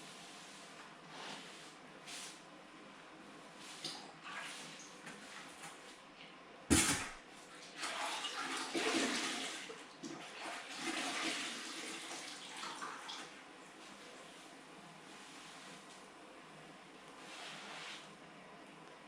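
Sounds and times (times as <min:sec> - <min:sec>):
water sloshing and splashing: 0:06.7 - 0:13.4.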